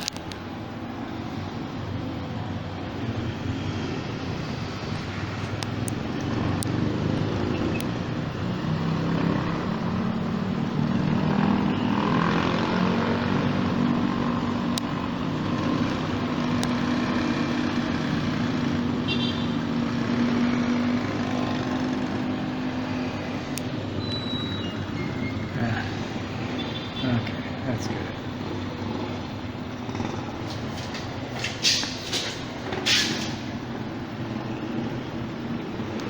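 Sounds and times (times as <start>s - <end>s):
traffic hum: 0.0s - 36.0s
vehicle engine running: 28.6s - 33.6s.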